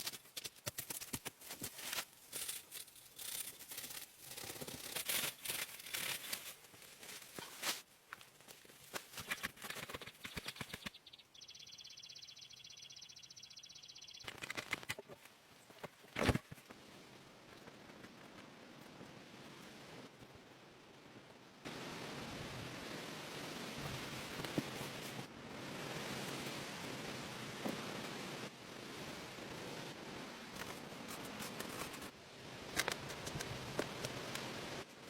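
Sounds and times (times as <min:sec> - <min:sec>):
rustling and crackling: 0:00.0 - 0:11.0.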